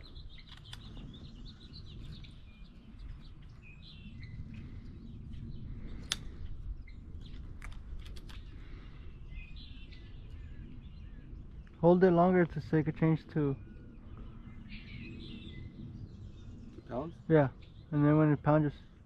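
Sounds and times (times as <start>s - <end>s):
small birds chirping: 0.0s - 19.0s
steady low rumble: 0.0s - 19.0s
sharp clicks: 0.4s - 1.0s, 6.0s - 6.3s.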